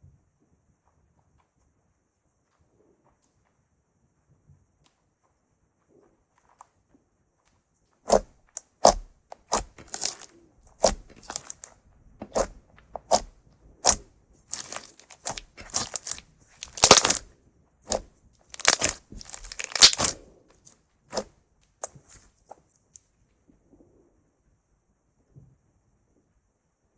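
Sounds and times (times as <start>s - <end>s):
slime popping and crackling: 8.1s - 17.3s, 17.9s - 20.2s.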